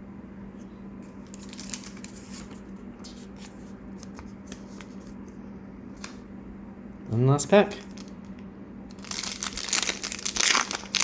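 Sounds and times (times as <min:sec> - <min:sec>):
low steady hum: 0:00.0 - 0:11.0
trading cards and packaging crinkling: 0:01.2 - 0:05.1, 0:07.7 - 0:11.0.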